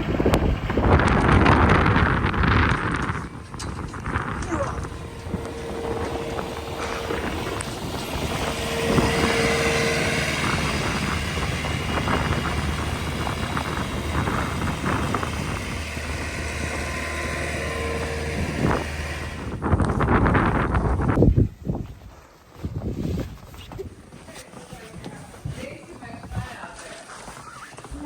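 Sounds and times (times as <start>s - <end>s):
farm vehicle engine running: 0.0s - 21.2s
higher engine tone: 0.0s - 21.2s.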